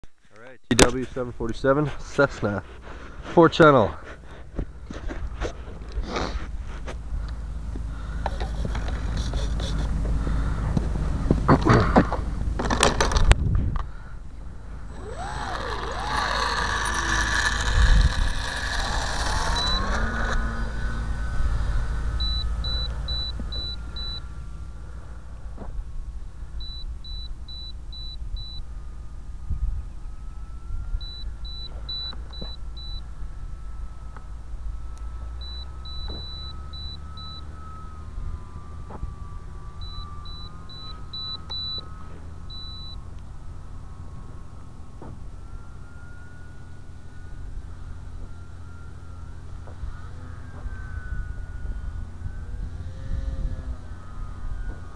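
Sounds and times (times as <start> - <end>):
electric motor and propeller whine: 1.5 - 54.9.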